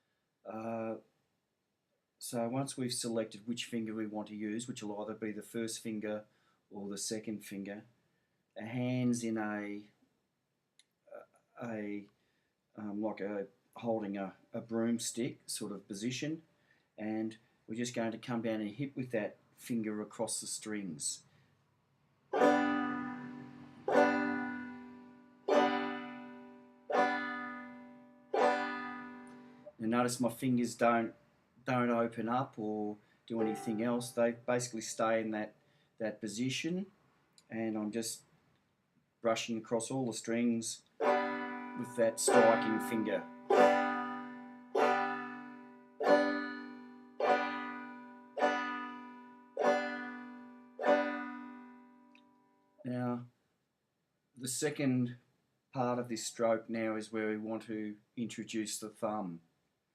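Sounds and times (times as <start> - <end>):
banjo strums: 22.4 - 30.0, 33.4 - 34.1, 41.0 - 51.7.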